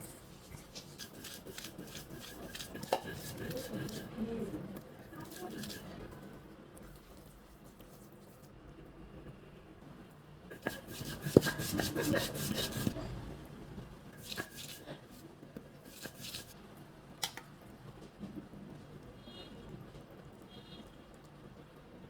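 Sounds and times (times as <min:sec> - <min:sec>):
rubbing and scraping: 0:00.0 - 0:06.3, 0:10.5 - 0:13.0, 0:14.2 - 0:16.6.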